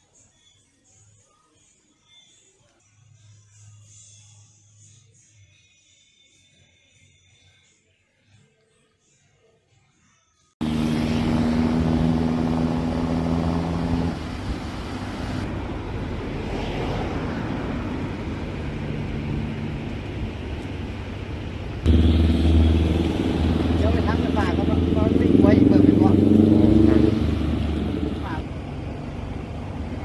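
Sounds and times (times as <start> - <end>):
vehicle engine running: 10.6 - 16.5, 17.4 - 30.0
deeper engine sound: 10.6 - 30.0
noisy rush: 10.6 - 30.0.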